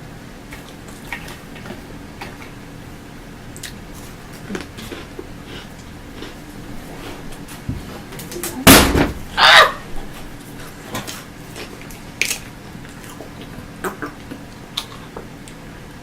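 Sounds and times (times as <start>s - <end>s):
mouth smacks and small clicks: 3.6s - 3.8s, 12.2s - 15.6s
heavy thump: 8.7s - 9.3s.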